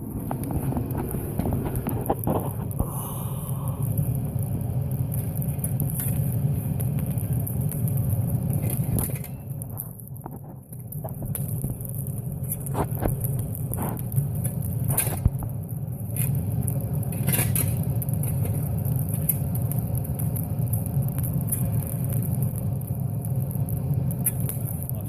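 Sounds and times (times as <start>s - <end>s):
furnace low rumble: 0.0s - 25.0s
sharp clinks and crackles: 5.0s - 25.0s.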